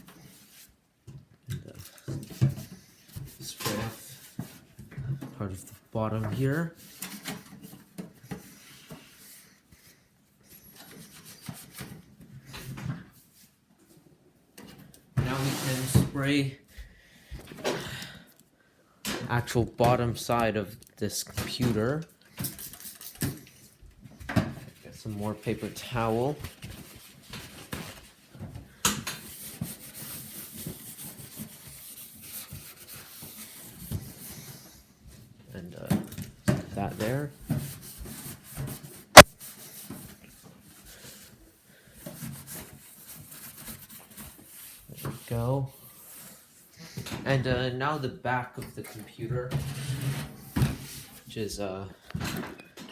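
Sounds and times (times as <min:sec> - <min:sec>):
towel rubbing computer case: 0:15.2 - 0:16.2.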